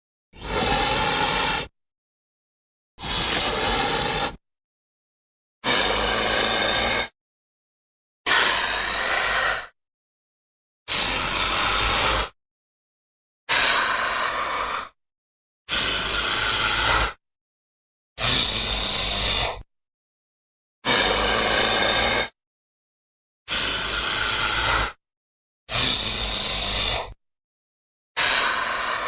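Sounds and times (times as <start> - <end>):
harsh breathy monster hiss: 0.4 - 1.7, 3.0 - 4.4, 11.1 - 12.3.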